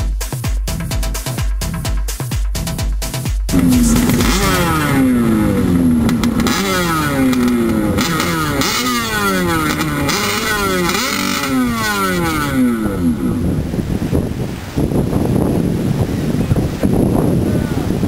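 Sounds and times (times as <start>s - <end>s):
watercraft engine revving: 3.5s - 14.2s.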